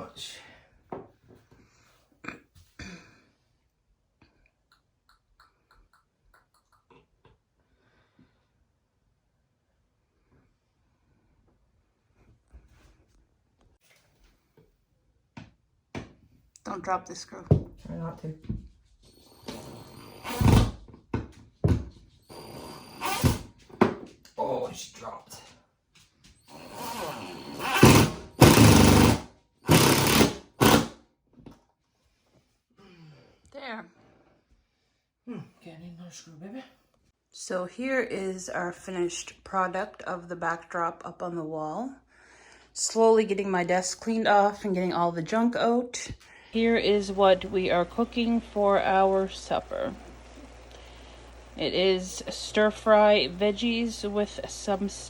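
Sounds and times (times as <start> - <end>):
power drill whining: 19.1 - 20.8, 22.3 - 23.6, 26.4 - 30.9, 46.6 - 55.0.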